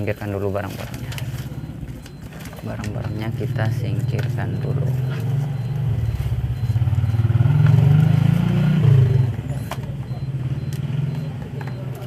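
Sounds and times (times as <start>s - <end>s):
vehicle engine running: 0.8s - 12.0s.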